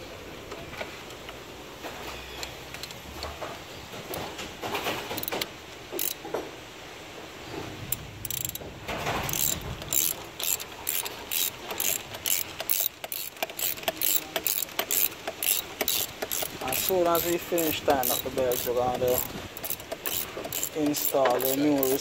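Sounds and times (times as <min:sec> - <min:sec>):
ratchet wrench clicking: 0:05.2 - 0:05.4, 0:06.0 - 0:06.2, 0:07.9 - 0:08.6, 0:09.2 - 0:22.0.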